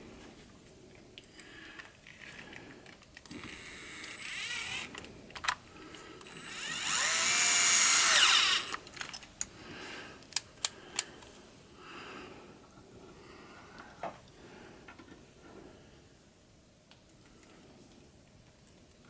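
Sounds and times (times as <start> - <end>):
power screwdriver whining: 3.4 - 5.1, 6.2 - 8.8.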